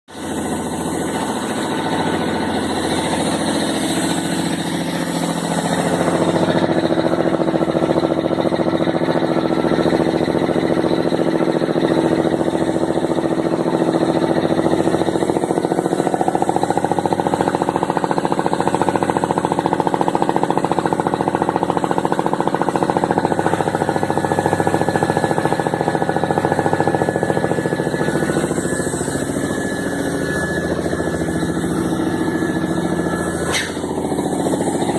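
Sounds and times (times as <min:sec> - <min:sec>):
air compressor chattering: 0:00.1 - 0:34.9.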